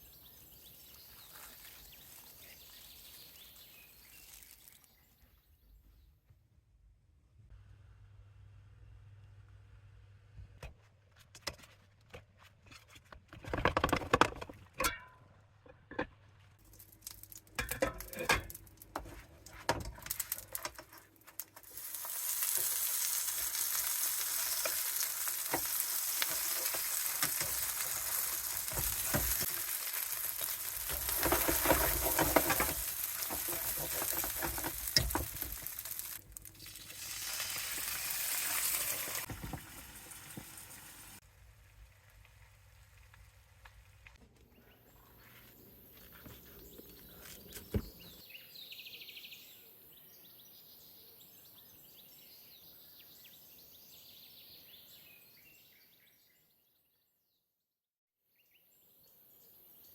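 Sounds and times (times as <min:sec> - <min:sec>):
food sizzling in oil: 0:00.0 - 0:05.0, 0:21.3 - 0:41.2
cookware clattering: 0:17.6 - 0:18.6, 0:30.8 - 0:36.0.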